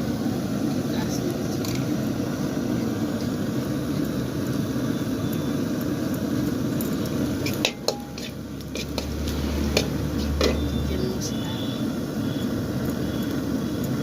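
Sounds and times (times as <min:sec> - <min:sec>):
low rumbling noise: 0:00.0 - 0:13.8
metal utensils clinking on pots: 0:01.5 - 0:02.2, 0:05.3 - 0:11.3.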